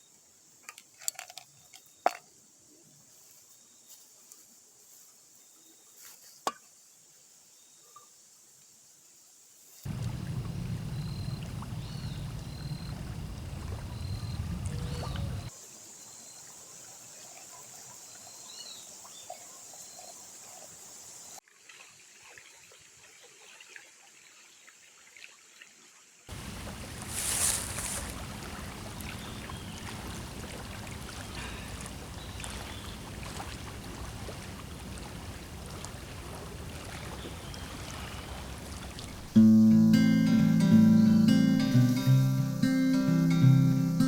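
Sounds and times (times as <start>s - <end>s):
trickling water: 9.9s - 15.5s, 26.3s - 39.4s
soft hush: 26.3s - 39.3s.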